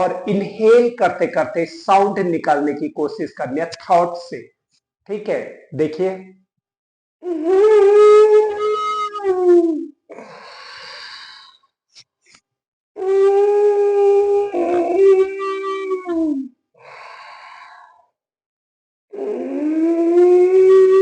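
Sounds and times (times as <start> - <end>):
man breathing with moaning tones: 10.1 - 11.7, 16.8 - 18.2.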